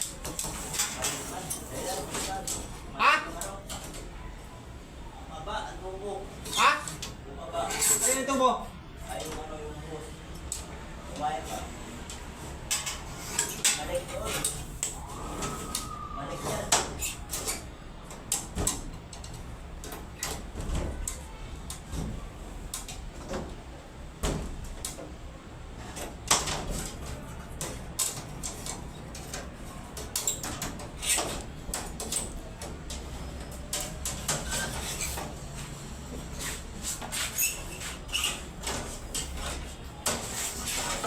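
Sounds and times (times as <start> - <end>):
tools clicking and scraping: 12.6 - 15.0, 26.0 - 35.5.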